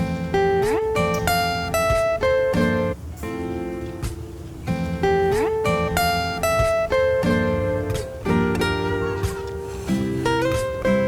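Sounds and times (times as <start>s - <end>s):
acoustic guitar strumming chords: 0.0s - 11.0s.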